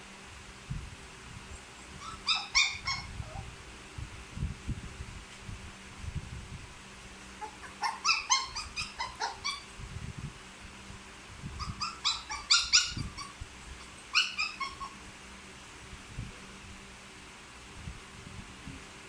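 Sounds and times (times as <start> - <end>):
puppy whimpering and yelping: 1.5 - 3.5, 7.4 - 9.7, 11.6 - 15.1.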